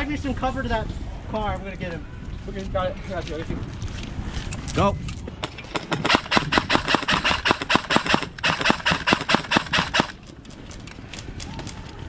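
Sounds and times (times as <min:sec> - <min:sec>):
airsoft gun rapid shots: 0:05.4 - 0:10.3.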